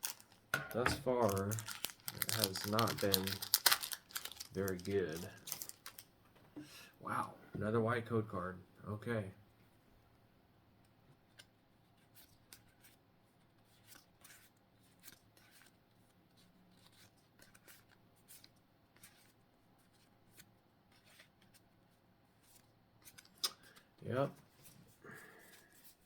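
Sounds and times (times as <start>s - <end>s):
trading cards rustling and clicking: 0.0s - 6.1s, 22.4s - 23.9s.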